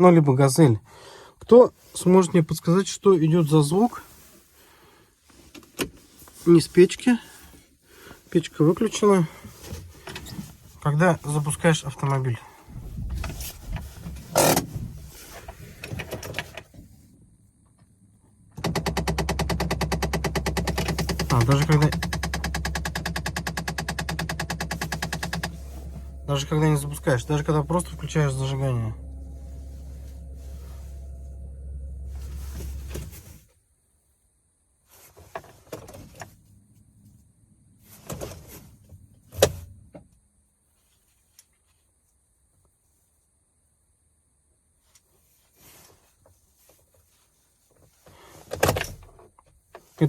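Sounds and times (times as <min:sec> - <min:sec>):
low steady hum: 0:06.0 - 0:34.2
rapid knocking from dashboard: 0:18.6 - 0:29.3.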